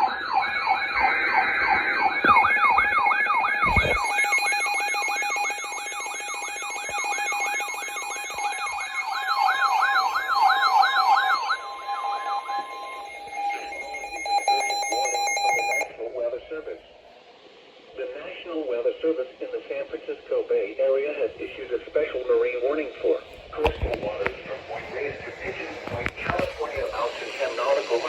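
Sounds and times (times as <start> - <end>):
electronic sirens yelping: 0.0 - 16.0
steady siren tone: 0.0 - 17.3, 23.5 - 28.0.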